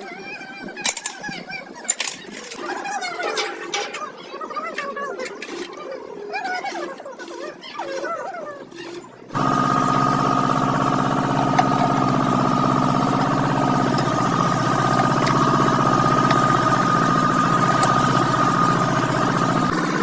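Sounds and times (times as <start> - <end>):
motor running with high whine: 9.3 - 20.0.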